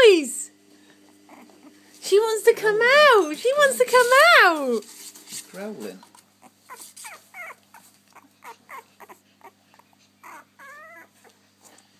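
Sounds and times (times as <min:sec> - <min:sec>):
puppy whimpering: 0:01.1 - 0:01.8, 0:06.4 - 0:11.4.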